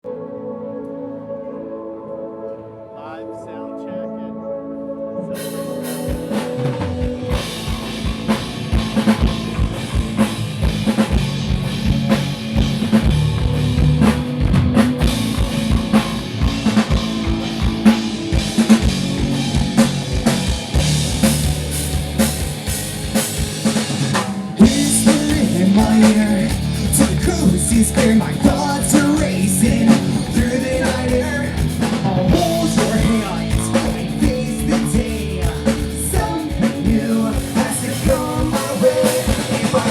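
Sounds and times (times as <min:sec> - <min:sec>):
live band playing: 0:05.3 - 0:39.9
sustained bass notes: 0:05.5 - 0:39.9
drum kit with kick drum: 0:05.8 - 0:39.9.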